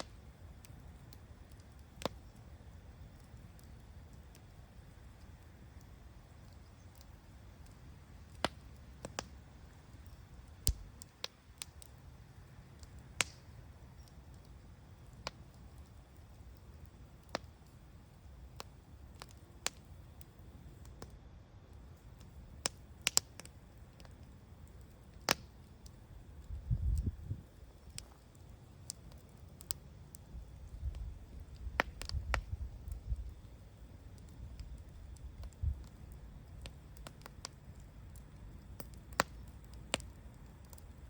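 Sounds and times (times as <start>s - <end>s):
bonfire crackling: 0.0s - 41.0s
low steady rumble: 23.5s - 38.7s.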